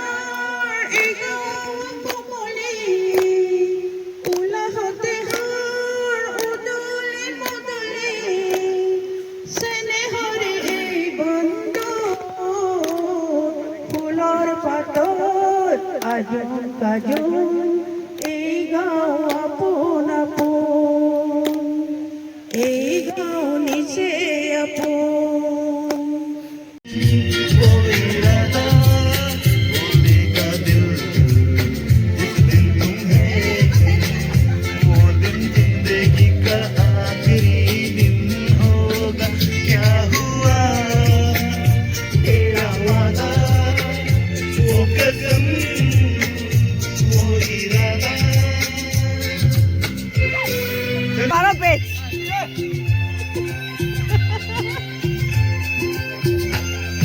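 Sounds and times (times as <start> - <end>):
high singing voice: 0.0 - 54.0
sharp beat: 26.9 - 50.6.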